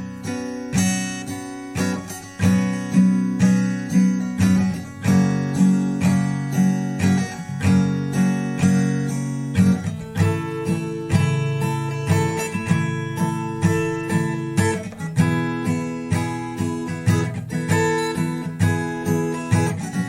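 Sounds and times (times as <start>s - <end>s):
acoustic guitar strumming chords: 0.0s - 20.0s.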